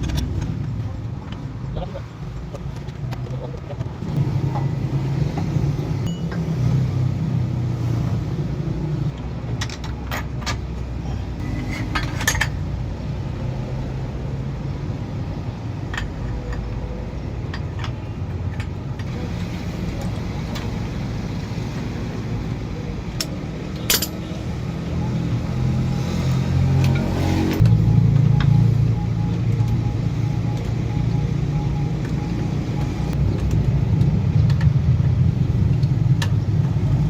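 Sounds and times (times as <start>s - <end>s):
metal tools clinking: 11.4s - 12.6s, 23.7s - 24.4s.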